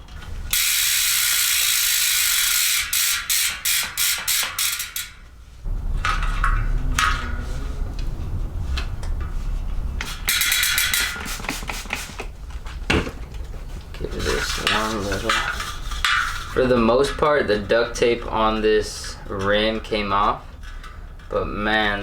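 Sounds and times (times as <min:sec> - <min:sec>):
bike freehub ratcheting: 0:00.1 - 0:05.2, 0:10.0 - 0:11.6
wheel rumbling: 0:05.1 - 0:11.0, 0:11.6 - 0:22.0
handling knocks: 0:12.6 - 0:15.5.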